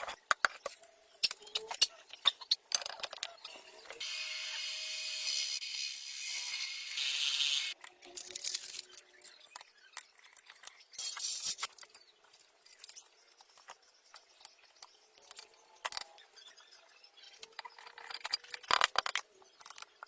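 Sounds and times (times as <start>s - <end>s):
tools and metal parts clinking: 7.8s - 16.4s, 17.4s - 20.0s.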